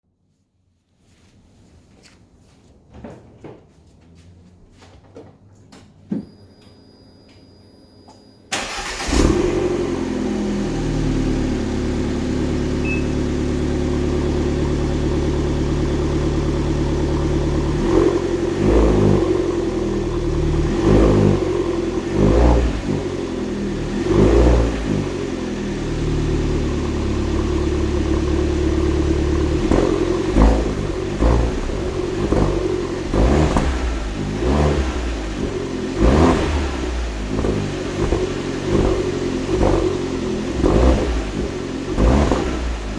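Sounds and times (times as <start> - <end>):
car engine idling and revving: 8.5 - 42.9.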